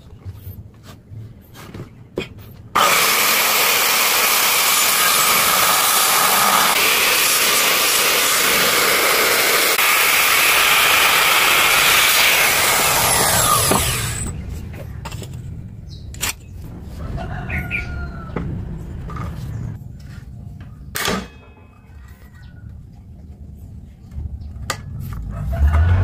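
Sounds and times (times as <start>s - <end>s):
electric power tool running: 2.8s - 14.3s.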